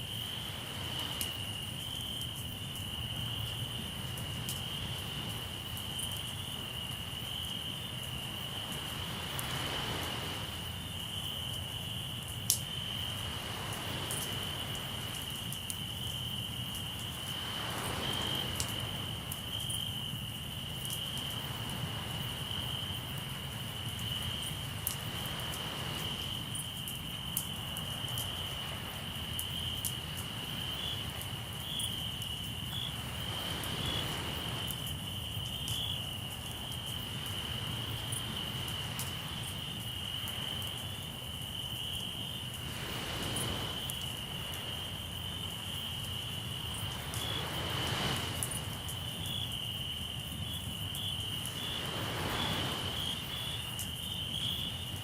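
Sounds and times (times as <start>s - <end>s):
sea waves washing in: 0.0s - 1.8s, 8.3s - 11.0s, 12.9s - 15.6s, 16.8s - 19.5s, 21.2s - 35.4s, 36.3s - 55.0s
crickets trilling: 0.0s - 55.0s.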